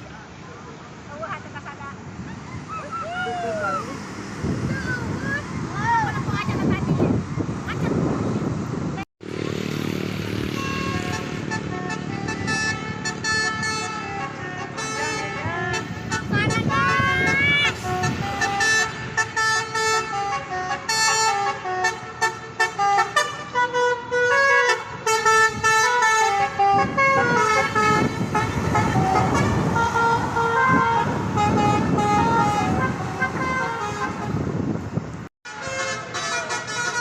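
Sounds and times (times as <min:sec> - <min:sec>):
bus engine: 0:00.0 - 0:37.0
road noise: 0:00.0 - 0:37.0
musical air horn tune: 0:10.5 - 0:34.6, 0:35.5 - 0:37.0.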